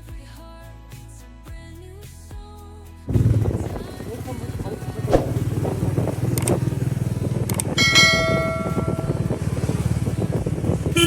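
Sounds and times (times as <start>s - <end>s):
vehicle engine running: 3.1s - 11.0s
bell-like ring: 7.8s - 9.4s.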